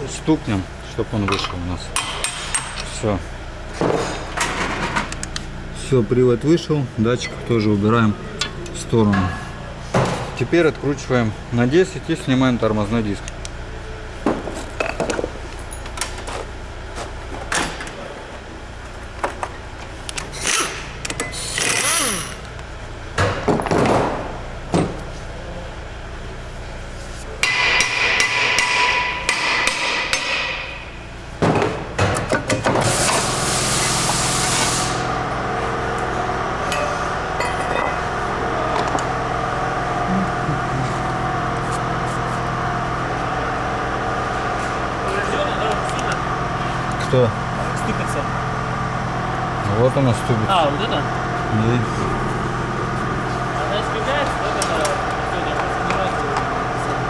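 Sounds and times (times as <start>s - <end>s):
workshop machine hum: 0.0s - 57.0s
metal tools clinking and scraping: 8.4s - 9.6s, 36.7s - 38.2s.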